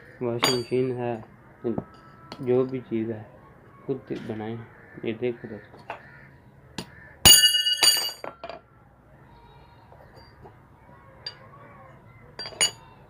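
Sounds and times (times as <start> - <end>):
metal tools striking metal: 0.4 - 1.0, 7.3 - 8.6, 11.2 - 11.4, 12.4 - 12.9.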